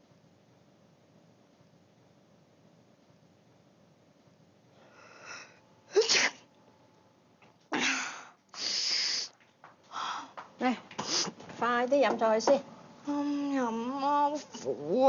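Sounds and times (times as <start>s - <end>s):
person sneezing: 5.9s - 6.4s.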